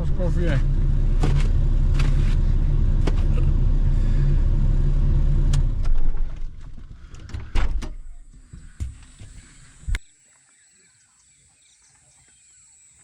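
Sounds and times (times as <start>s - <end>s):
car engine and road rumble: 0.0s - 10.1s.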